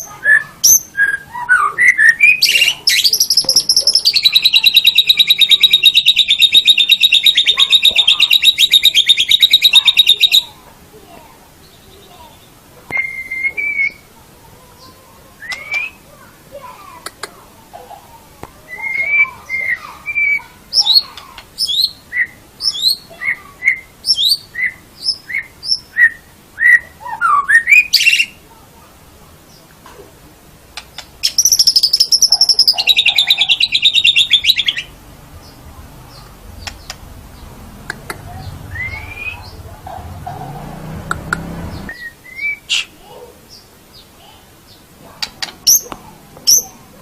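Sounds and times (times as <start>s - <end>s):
bird whistling song: 0.0s - 10.5s, 11.7s - 14.1s, 15.4s - 16.0s, 18.7s - 28.4s, 31.2s - 35.6s, 38.3s - 39.6s, 41.7s - 43.0s.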